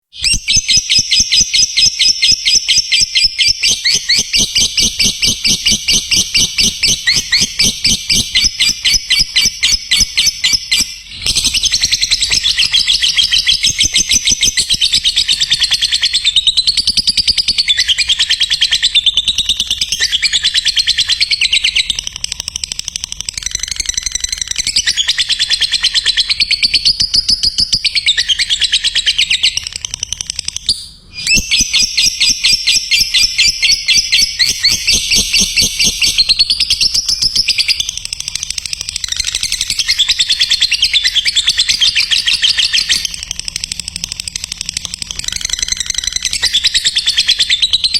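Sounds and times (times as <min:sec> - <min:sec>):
lovebird chattering trill: 0:00.2 - 0:47.9.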